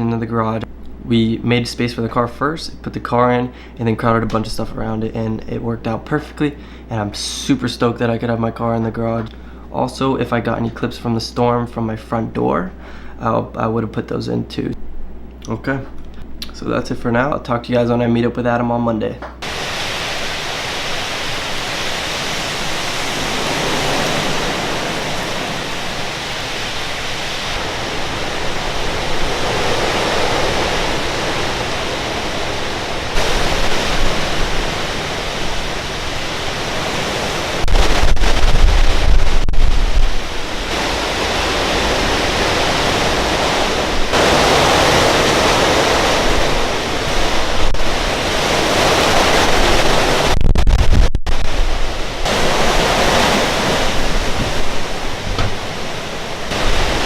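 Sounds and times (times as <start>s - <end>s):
hurricane wind and rain: 0.0s - 13.5s, 19.4s - 57.0s
wind buffeting on microphone: 19.7s - 57.0s.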